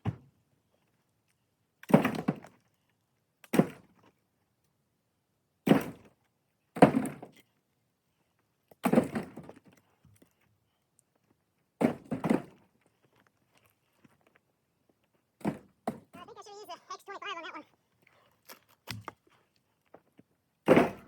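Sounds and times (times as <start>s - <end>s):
wooden thunks on firewood: 6.8s - 7.4s, 8.8s - 9.6s, 11.8s - 12.6s, 20.6s - 21.0s.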